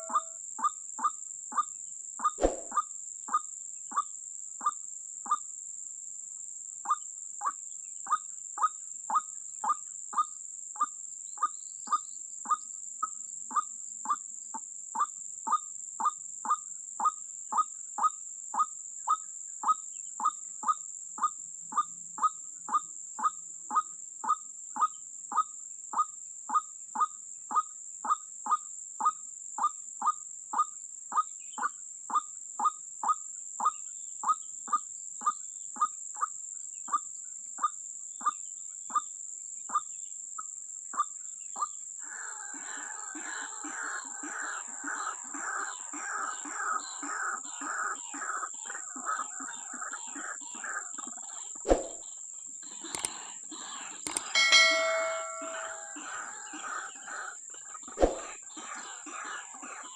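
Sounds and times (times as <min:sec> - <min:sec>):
bird call notes: 0:00.0 - 0:00.4, 0:02.4 - 0:02.8, 0:54.1 - 0:56.6
sharp click: 0:02.4 - 0:02.7, 0:52.9 - 0:53.2, 0:54.1 - 0:55.9.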